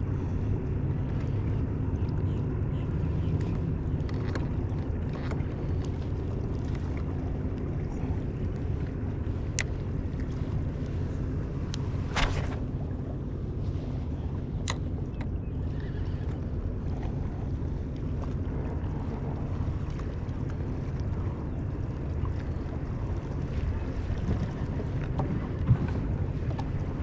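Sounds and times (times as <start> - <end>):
wind rumble on microphone: 0.0 - 27.0
faint clicks: 14.6 - 16.4.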